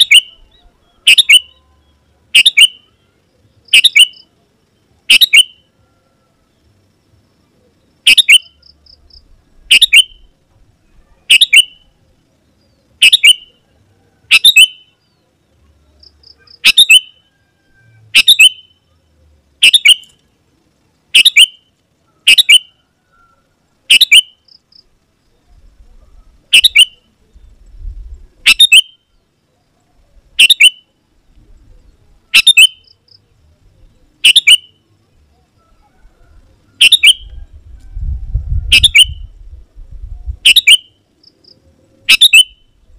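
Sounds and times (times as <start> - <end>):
bird giving sharp calls: 0.0 - 1.6, 2.3 - 2.8, 5.1 - 5.7, 8.0 - 8.8, 9.6 - 10.3, 13.0 - 13.5, 14.3 - 14.9, 16.2 - 17.3, 18.0 - 18.7, 19.6 - 20.2, 21.1 - 22.8, 26.5 - 27.0, 28.4 - 29.0, 32.3 - 32.9, 34.2 - 34.8, 36.8 - 37.4, 38.7 - 39.2, 40.4 - 40.9, 42.0 - 42.6.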